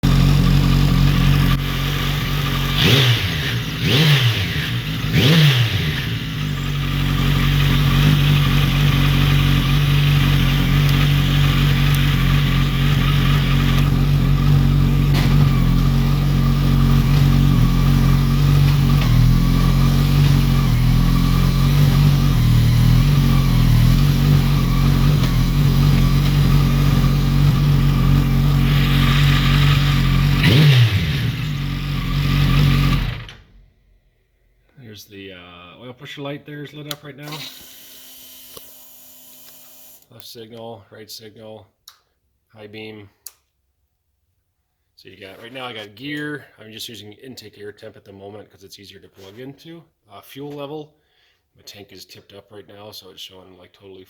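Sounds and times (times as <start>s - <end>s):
car engine idling and revving: 0.0s - 33.6s.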